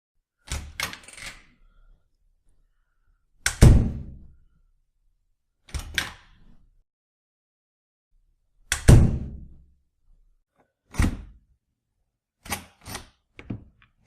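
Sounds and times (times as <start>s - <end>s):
deep door thud: 3.6s - 4.1s, 8.9s - 9.5s.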